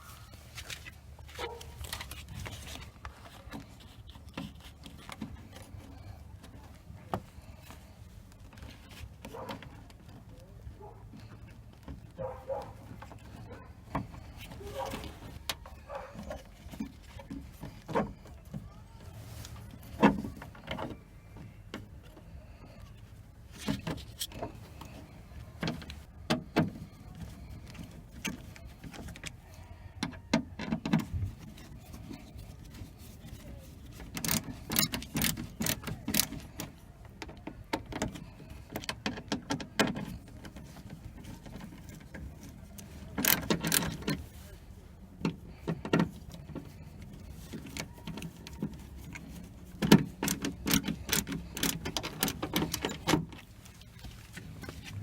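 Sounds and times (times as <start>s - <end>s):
hands clicking and tapping on car door: 23.5s - 44.4s, 45.1s - 55.0s.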